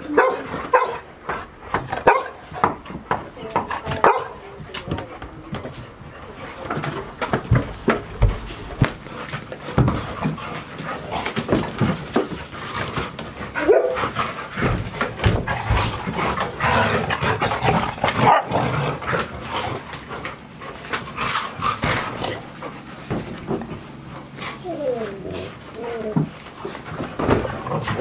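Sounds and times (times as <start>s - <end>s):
puppies panting: 0.0s - 28.0s
puppies scuffling: 0.0s - 28.0s
puppy whining: 24.3s - 26.8s.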